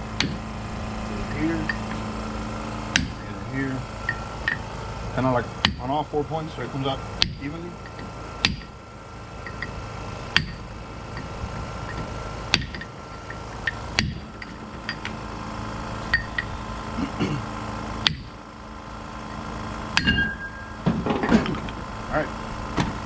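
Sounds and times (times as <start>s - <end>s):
hammer striking metal: 2.9s - 3.2s, 7.2s - 8.7s, 10.4s - 10.6s, 20.0s - 21.6s.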